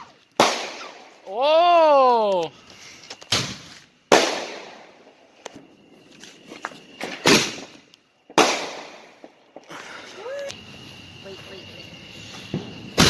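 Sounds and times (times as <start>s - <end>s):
fireworks bangs: 0.0s - 1.4s, 3.3s - 5.7s, 6.4s - 10.3s, 11.2s - 13.0s.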